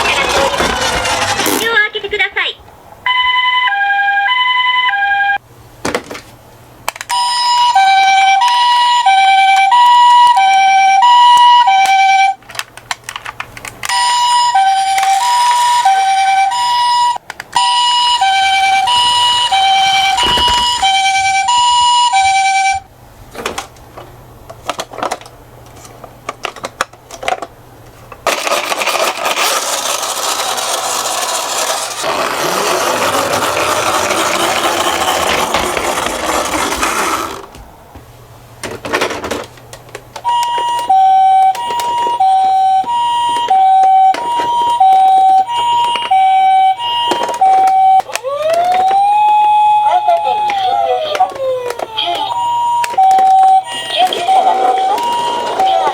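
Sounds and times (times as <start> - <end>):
rattling rush: 0.0 - 2.0, 17.8 - 22.9, 29.6 - 37.5
toy two-tone siren: 3.1 - 5.4, 7.1 - 12.4, 13.8 - 22.8, 40.3 - 55.9
rising siren wail: 7.3 - 12.4, 14.0 - 22.9, 40.3 - 55.9.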